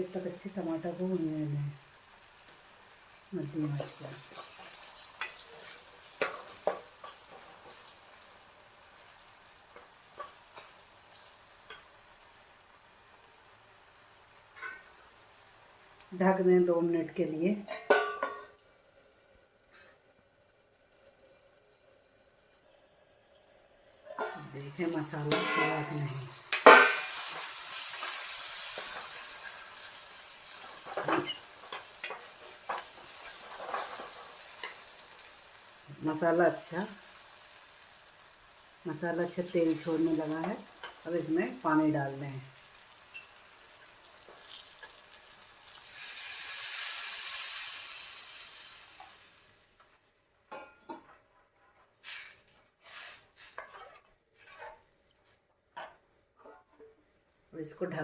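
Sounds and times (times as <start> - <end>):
food sizzling in oil: 0.0 - 50.7, 51.8 - 55.4
spoon scraping and knocking pan: 3.7 - 8.0, 17.7 - 18.6, 24.1 - 29.5, 30.5 - 34.9, 50.5 - 54.9
spoon scraping and stirring: 52.1 - 55.4.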